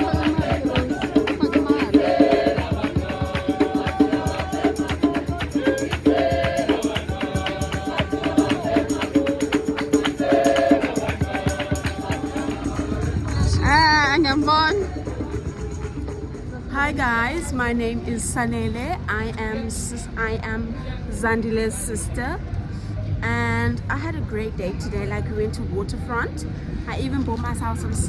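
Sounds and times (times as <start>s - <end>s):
music with percussion beat: 0.0s - 18.9s.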